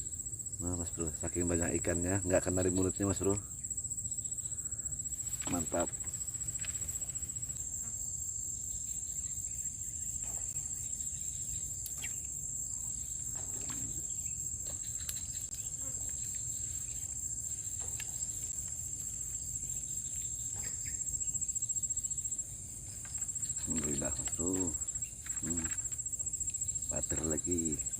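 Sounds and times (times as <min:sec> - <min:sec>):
insects chirring: 0:00.0 - 0:27.9
faint clicks: 0:14.7 - 0:16.4.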